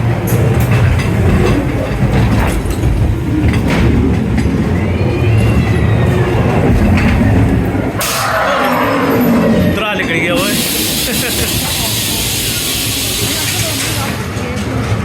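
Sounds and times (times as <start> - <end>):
rail clacks: 0.0 - 15.0
ride car rumbling along track: 0.0 - 15.0
wheel squeal: 4.4 - 14.2.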